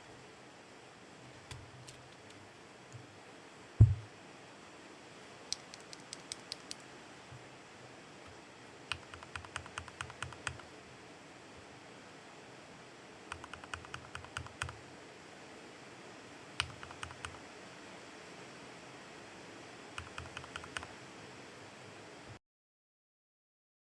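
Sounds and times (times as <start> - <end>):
mechanical keyboard typing: 5.6 - 6.8, 8.9 - 10.6, 13.3 - 14.8, 16.6 - 17.4, 20.0 - 20.9.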